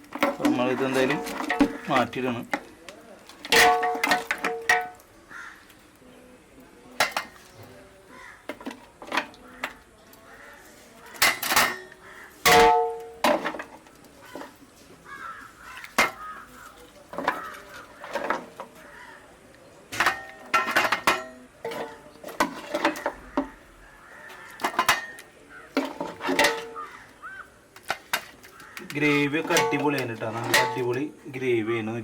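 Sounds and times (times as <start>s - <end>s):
metal ladle scraping a pot: 0.0s - 2.2s, 19.9s - 23.7s, 24.3s - 27.2s.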